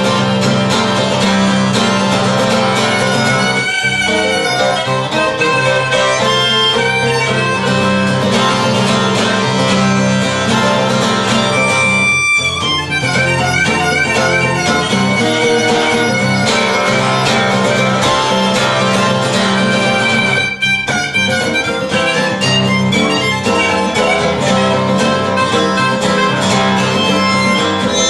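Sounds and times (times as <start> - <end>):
acoustic guitar strumming: 0.0 - 28.0
melodic lead wavering notes: 0.3 - 28.0.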